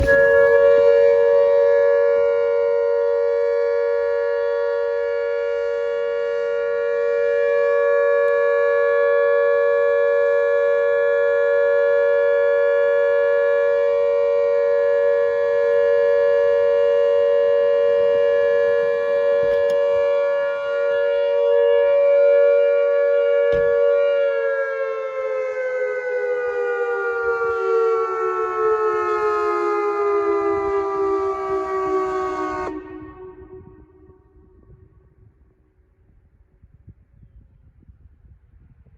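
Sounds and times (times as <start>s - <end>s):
dual-tone warning siren: 0.0s - 36.1s.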